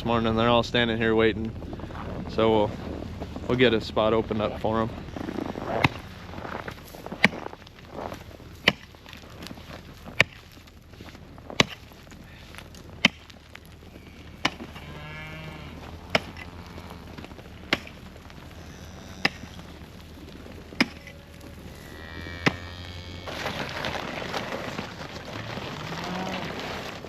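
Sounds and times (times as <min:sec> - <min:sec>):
cows mooing: 0:04.6 - 0:08.2, 0:13.9 - 0:27.0
ice being chopped: 0:08.6 - 0:09.0, 0:13.0 - 0:13.4.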